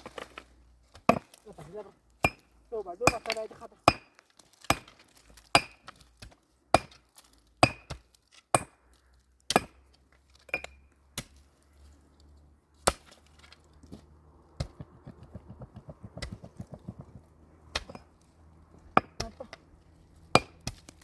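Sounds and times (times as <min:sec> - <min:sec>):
metal tool striking wood: 0:02.2 - 0:06.0, 0:06.7 - 0:07.0, 0:07.6 - 0:08.8, 0:09.5 - 0:09.8, 0:14.6 - 0:18.1.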